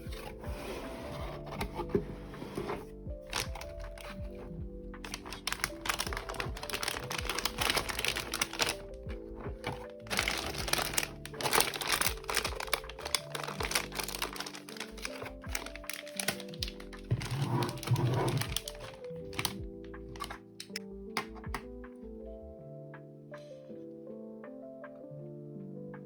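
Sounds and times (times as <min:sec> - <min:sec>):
background music: 0:00.0 - 0:26.0
packaging crinkling: 0:03.3 - 0:19.6, 0:20.2 - 0:20.8.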